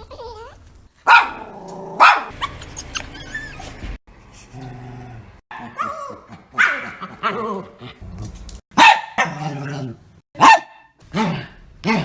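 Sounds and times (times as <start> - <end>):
dog barking: 1.0 - 3.8, 5.5 - 7.5, 8.7 - 9.6, 10.4 - 11.0
dog low grumble: 1.4 - 5.4
dog whining vocal noises: 2.0 - 8.4.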